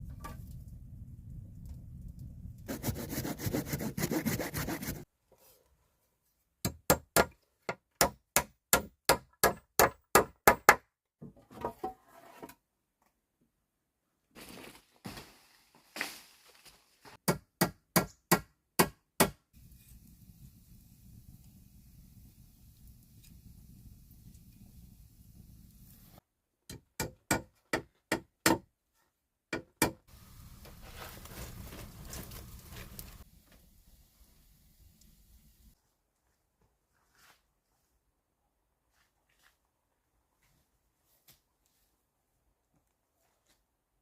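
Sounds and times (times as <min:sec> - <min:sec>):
hand saw cutting wood: 0:02.7 - 0:05.0.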